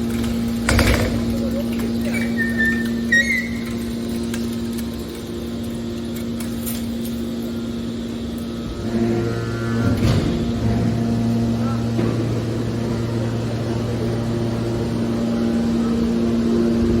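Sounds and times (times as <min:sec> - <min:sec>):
hydraulic baler humming: 0:00.0 - 0:17.0
high squeals: 0:02.0 - 0:04.1
deep loud tone: 0:08.6 - 0:17.0.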